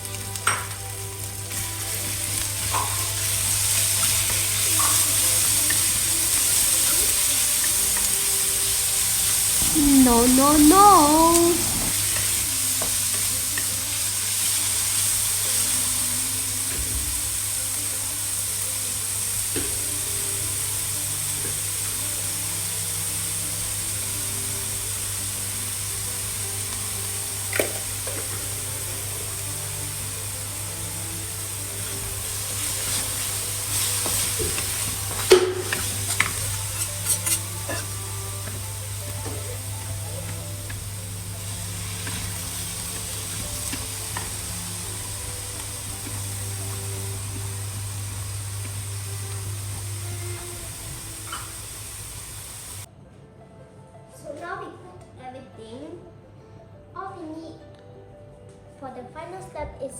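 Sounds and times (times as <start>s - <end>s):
sauce sizzling in a frying pan: 0.0s - 52.9s
utensil knocking against pan: 34.0s - 37.9s.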